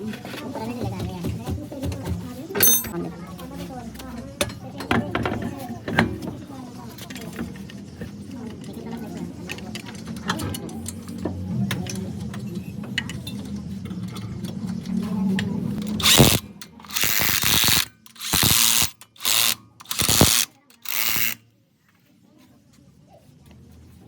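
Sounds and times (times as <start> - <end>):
ratcheting clicks: 15.8 - 21.4.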